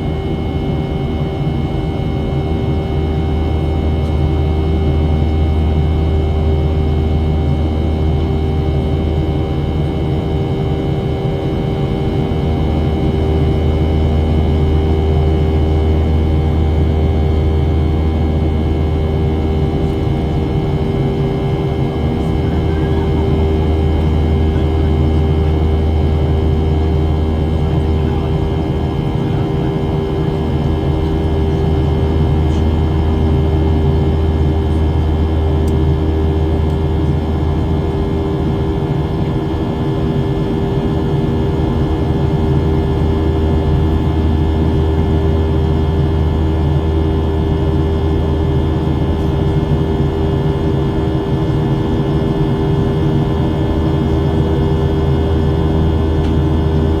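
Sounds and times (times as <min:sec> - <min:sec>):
airplane cabin engine noise: 0:00.0 - 0:57.0
steady whining tones: 0:00.0 - 0:57.0.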